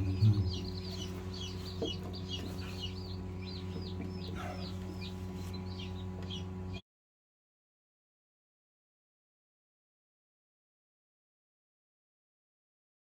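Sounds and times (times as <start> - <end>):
chicks peeping: 0.0 - 6.8
low electrical hum: 0.0 - 6.8.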